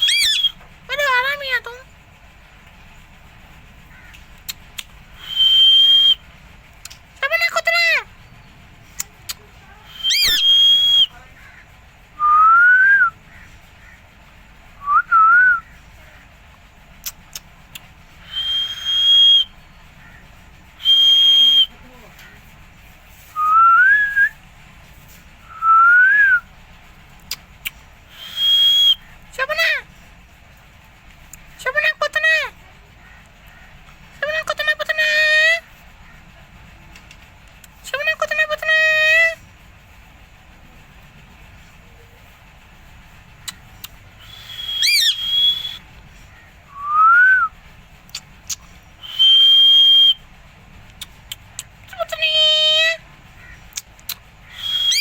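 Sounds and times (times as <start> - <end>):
parakeet harsh rising call: 0.0 - 0.5, 9.9 - 11.1, 44.3 - 46.4, 54.4 - 55.0
parakeet whistling: 0.0 - 1.2, 5.2 - 6.2, 9.9 - 11.2, 18.2 - 19.5, 20.8 - 21.7, 28.1 - 29.1, 44.2 - 45.8, 48.5 - 50.2, 54.4 - 55.0
faint clicks: 50.8 - 51.9.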